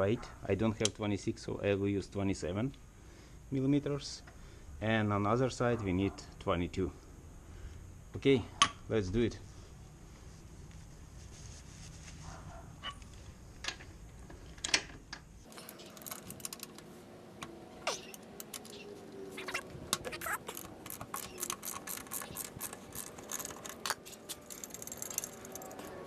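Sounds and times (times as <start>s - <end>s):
wrench clicking and squeaking: 17.9s - 26.0s.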